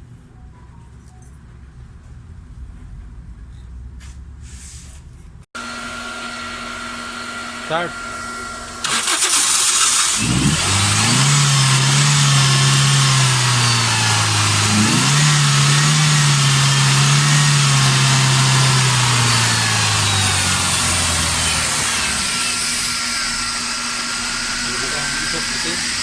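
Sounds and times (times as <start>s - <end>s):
engine revving: 7.6s - 26.0s
car engine starting and idling: 7.7s - 26.0s.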